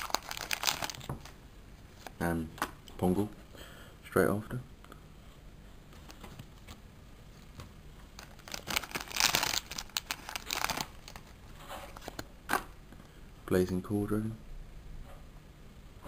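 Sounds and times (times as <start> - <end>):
wrapper crinkling and tearing: 0.0 - 1.4, 8.1 - 12.2.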